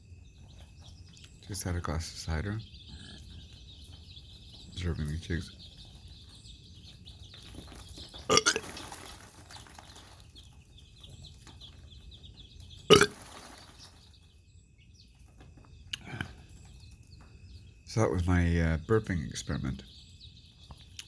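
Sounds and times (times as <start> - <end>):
chicks peeping: 0.0 - 21.0
man burping loudly: 8.3 - 8.7, 12.9 - 13.2.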